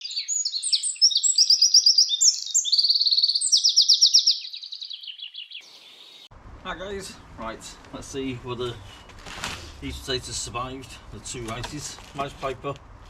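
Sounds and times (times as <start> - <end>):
songbird singing trills: 0.0 - 6.3.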